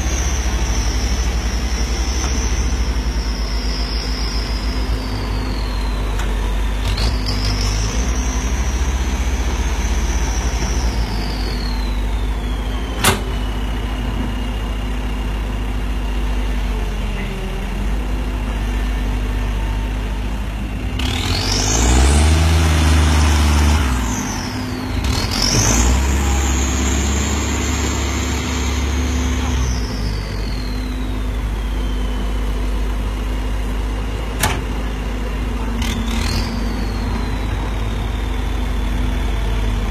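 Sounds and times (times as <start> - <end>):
high turbo whistle: 0.0 - 14.6, 21.0 - 33.9, 35.8 - 39.9
tractor diesel engine under load: 0.0 - 39.9.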